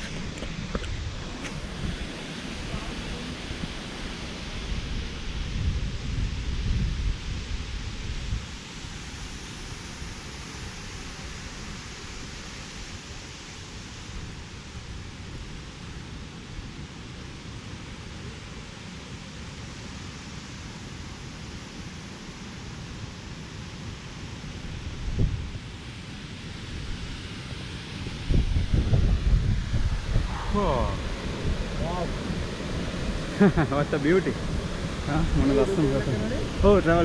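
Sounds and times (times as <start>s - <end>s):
waterfall rushing: 0.0s - 5.5s, 29.2s - 37.0s.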